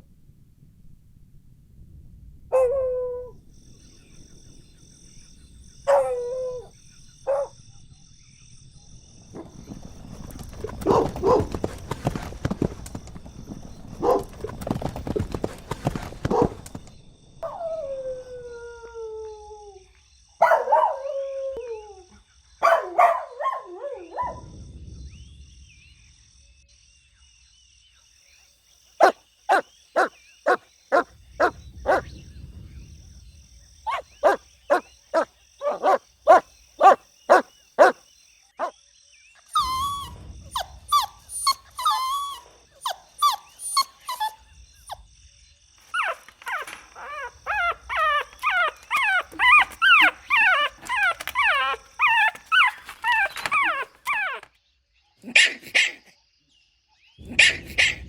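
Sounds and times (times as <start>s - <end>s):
puppies whining and yelping: 29.5s - 32.0s, 33.9s - 34.8s, 35.6s - 37.9s, 39.5s - 44.4s, 45.9s - 54.5s
sharp puppy yips: 29.5s - 32.0s, 33.9s - 38.0s, 39.5s - 44.4s, 45.9s - 54.4s
scuffling and rustling: 45.8s - 54.0s.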